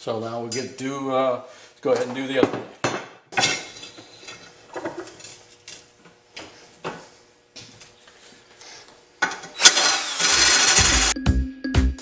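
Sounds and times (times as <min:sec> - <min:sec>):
blade sharpener grinding: 0:09.6 - 0:11.2.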